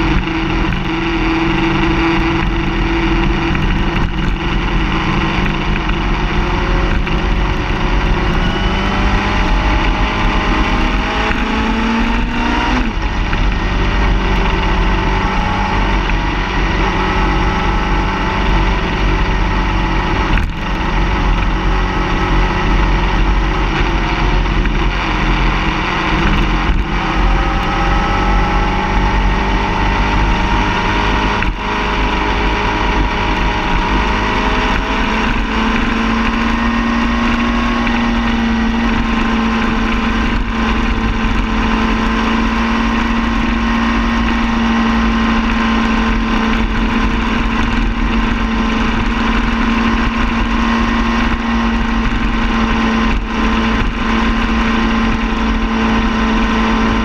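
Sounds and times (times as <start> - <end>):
car engine running: 0.0 - 57.0.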